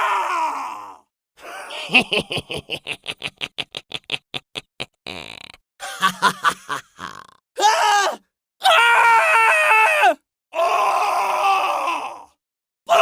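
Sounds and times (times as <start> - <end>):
man laughing evilly: 1.4 - 7.4.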